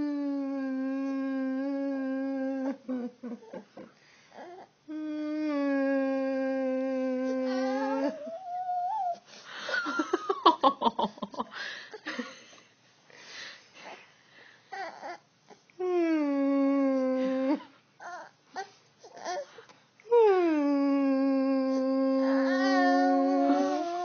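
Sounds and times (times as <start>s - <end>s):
person wailing and sobbing: 4.9s - 8.6s, 15.9s - 17.7s, 20.1s - 24.0s.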